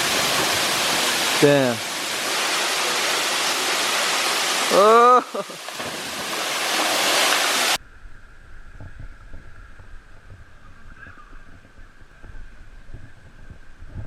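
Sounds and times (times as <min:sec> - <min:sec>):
waterfall rushing: 0:00.0 - 0:07.8.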